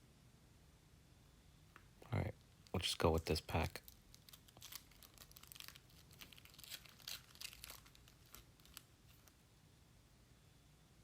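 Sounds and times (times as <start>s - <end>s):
foil wrapper tearing and crinkling: 3.8s - 9.4s.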